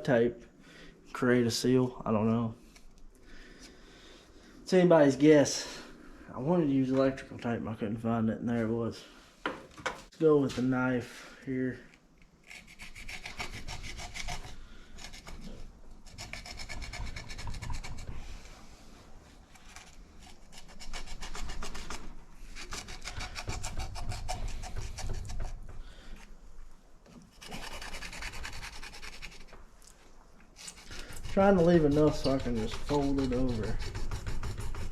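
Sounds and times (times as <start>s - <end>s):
knife rasping through tape: 12.4s - 18.2s, 19.5s - 25.6s, 27.3s - 29.5s, 30.6s - 34.9s.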